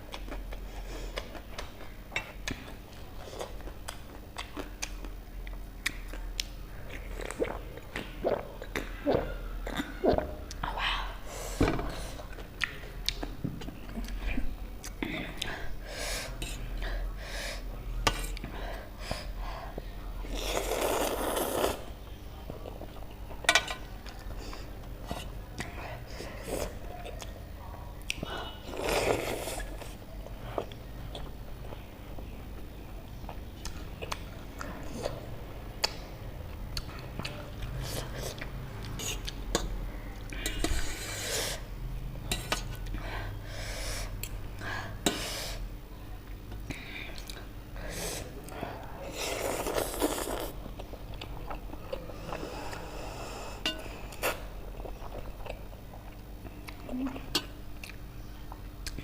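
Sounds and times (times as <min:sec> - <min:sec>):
noisy eating: 0:00.0 - 0:59.0
person eating noodles: 0:20.3 - 0:21.9, 0:28.6 - 0:30.0, 0:49.0 - 0:56.3.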